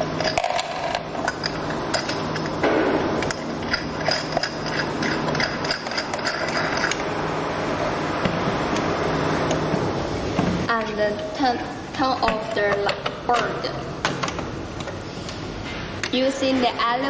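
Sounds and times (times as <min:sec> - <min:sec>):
metal nut clicking and rattling: 0:03.2 - 0:07.0.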